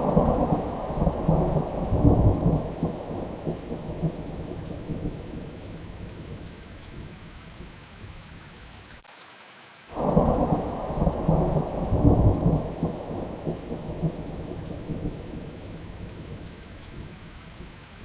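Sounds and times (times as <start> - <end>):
thunder clap and rumble: 0.0 - 7.1, 10.0 - 17.2
steady rain falling: 0.0 - 18.0.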